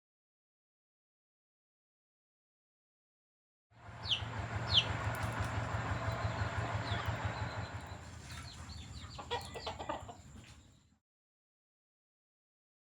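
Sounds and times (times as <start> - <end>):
steady low hum: 3.8 - 9.5
chickens clucking: 4.0 - 10.8.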